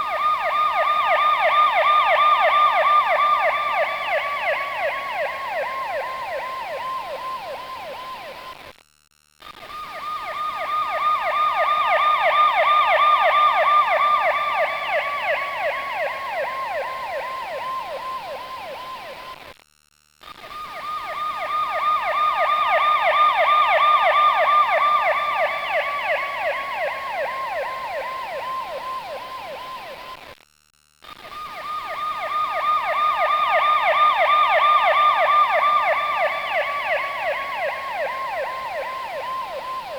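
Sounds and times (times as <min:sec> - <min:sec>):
siren warbling yelp passing: 0:21.1 - 0:30.0, 0:31.5 - 0:39.9.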